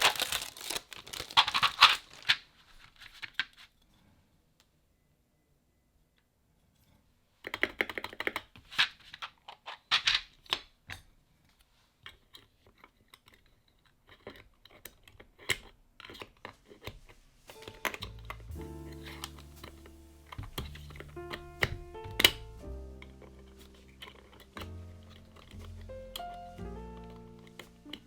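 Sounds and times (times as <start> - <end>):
keyboard keys clacking: 17.5 - 28.0
music: 17.5 - 28.0.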